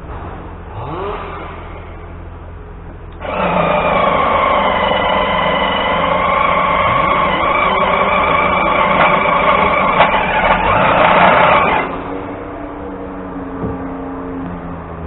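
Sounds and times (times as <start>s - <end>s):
chainsaw revving: 0.7s - 2.0s, 3.2s - 12.2s
high-revving small machine: 0.7s - 2.1s, 3.1s - 12.5s.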